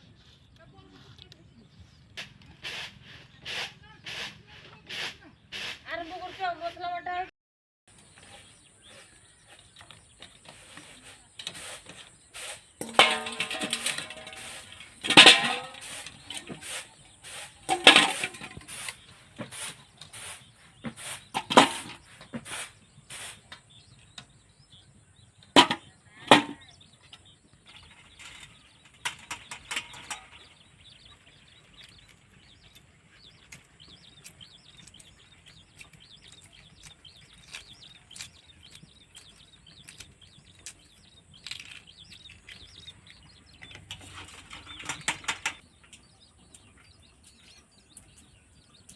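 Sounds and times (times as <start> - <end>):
sharp knocks and clatter: 7.9 - 22.7, 25.6 - 26.7, 27.6 - 30.6, 43.6 - 45.6
faint rustling and scraping: 7.9 - 24.5, 25.6 - 34.2, 34.9 - 45.7.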